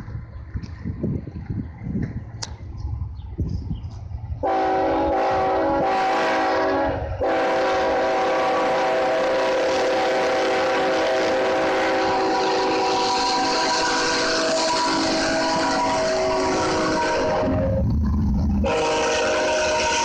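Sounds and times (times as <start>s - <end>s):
locomotive air horn chord: 4.4s - 17.8s, 18.6s - 20.0s
low rumble: 16.5s - 18.8s.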